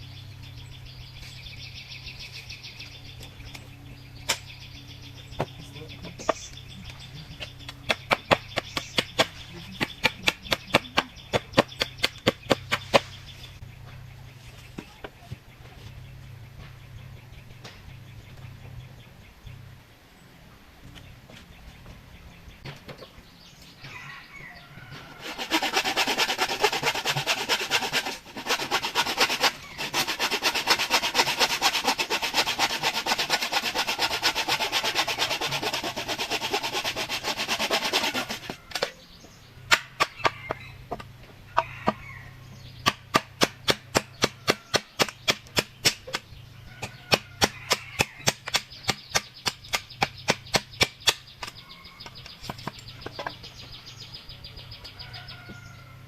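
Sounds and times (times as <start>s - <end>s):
rapid rasping strokes on bamboo: 6.2s - 13.4s, 25.1s - 38.9s, 42.8s - 46.2s, 46.8s - 51.6s.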